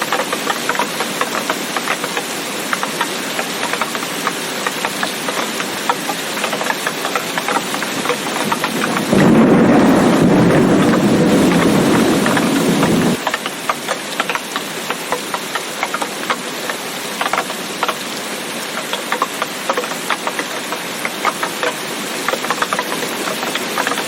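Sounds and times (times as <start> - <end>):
heavy rain patter: 0.0 - 24.0
low rumble of thunder: 8.0 - 13.2.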